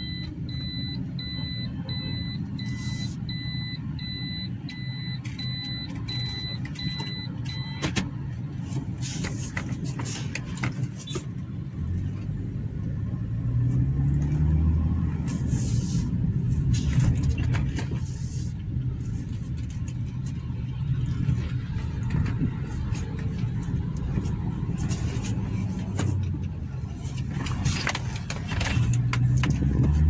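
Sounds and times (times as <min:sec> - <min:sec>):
short electronic beep: 0:00.0 - 0:07.8
car engine and road rumble: 0:00.0 - 0:30.0.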